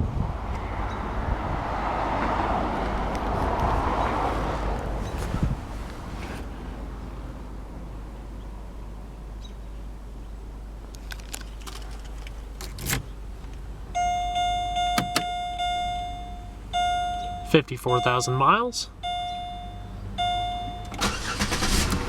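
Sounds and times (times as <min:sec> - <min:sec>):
car warning chime: 0:13.9 - 0:21.6
clicks from car cabin: 0:14.8 - 0:15.4.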